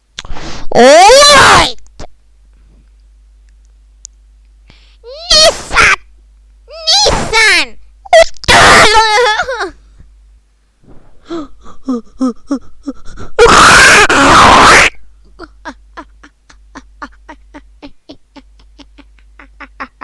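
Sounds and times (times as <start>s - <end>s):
person laughing: 11.3s - 13.2s, 15.2s - 20.0s.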